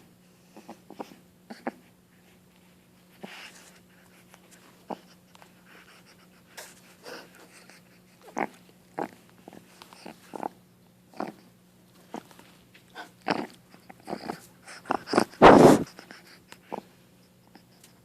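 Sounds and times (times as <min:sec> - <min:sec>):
puppy coughing and wheezing: 0:13.0 - 0:16.9.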